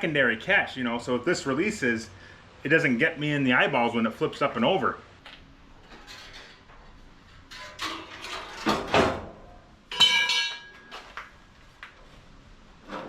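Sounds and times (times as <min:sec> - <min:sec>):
metal parts scraping and clanking: 0:05.8 - 0:09.0
sharp ringing metal clank: 0:09.9 - 0:10.9.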